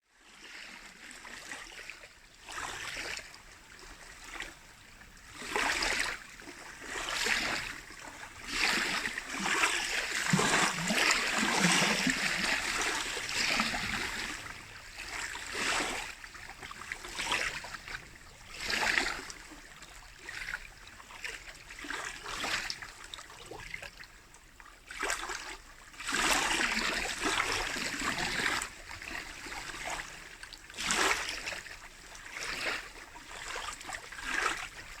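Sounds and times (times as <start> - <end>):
waves lapping against shore: 0.2 - 35.0.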